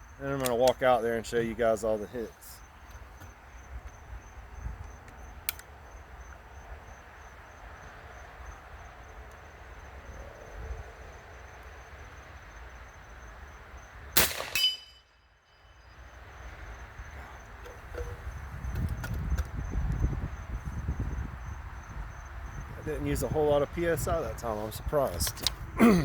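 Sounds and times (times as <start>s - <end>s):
insects chirring: 0.0s - 26.0s
air rifle shot: 14.2s - 15.0s
high ringing of steel target: 14.2s - 15.6s.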